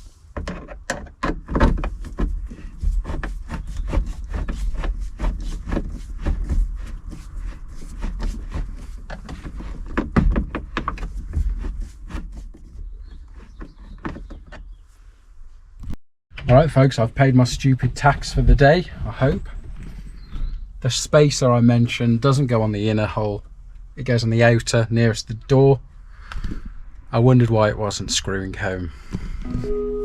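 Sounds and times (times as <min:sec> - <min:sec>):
plastic console clicking and rattling: 0:00.4 - 0:14.7.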